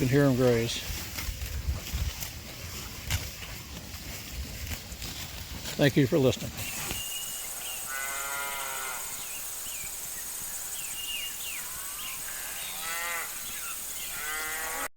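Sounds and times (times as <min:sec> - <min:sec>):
steady high hiss: 0:06.6 - 0:14.8.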